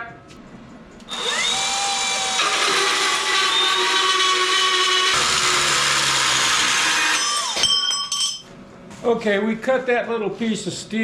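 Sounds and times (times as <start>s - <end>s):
angle grinder cutting steel: 1.1s - 7.8s.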